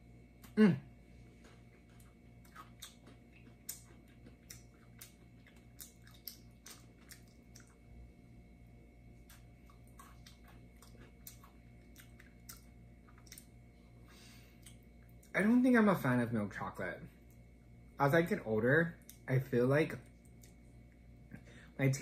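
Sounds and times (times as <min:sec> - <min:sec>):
person chewing crunchy snack: 0:01.2 - 0:07.8, 0:09.2 - 0:13.6.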